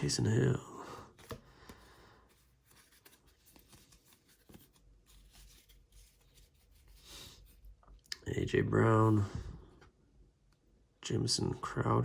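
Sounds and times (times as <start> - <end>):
trading cards rustling: 1.0 - 7.6.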